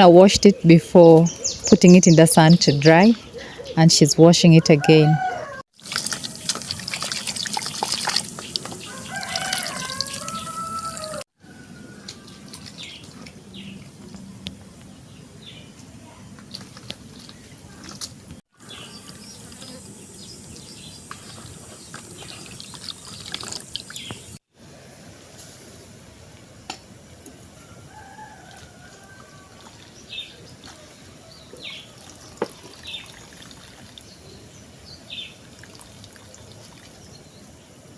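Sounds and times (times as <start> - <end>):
small birds chirping: 0.0 - 5.2, 18.6 - 24.4
rooster crowing: 4.6 - 5.6, 8.8 - 12.4, 27.6 - 29.6
water drips: 5.8 - 11.2, 21.0 - 24.4, 31.9 - 34.2, 35.4 - 37.0
water splashing in a basin: 5.8 - 11.2, 21.0 - 24.4, 31.8 - 34.2, 35.4 - 37.1.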